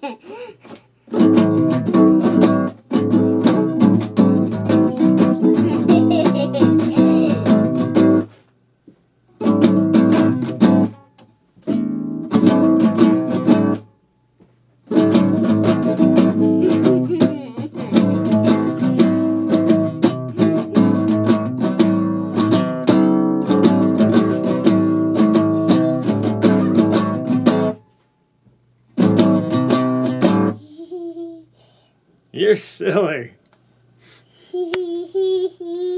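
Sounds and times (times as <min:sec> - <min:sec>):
acoustic guitar strumming: 0:01.1 - 0:08.4, 0:09.4 - 0:13.9, 0:14.9 - 0:27.8, 0:29.0 - 0:30.6.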